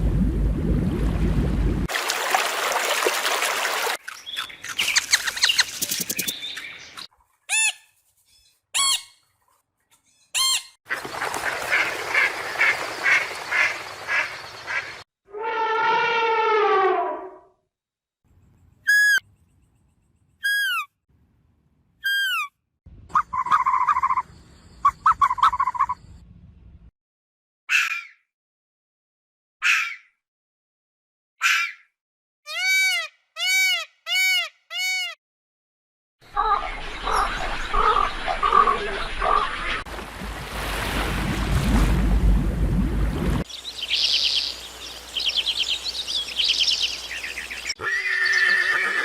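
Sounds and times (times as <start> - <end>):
long falling animal call: 43.8 - 49.0.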